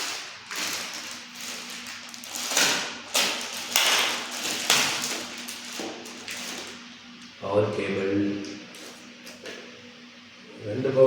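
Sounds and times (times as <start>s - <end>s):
packaging rustling: 0.0s - 6.9s.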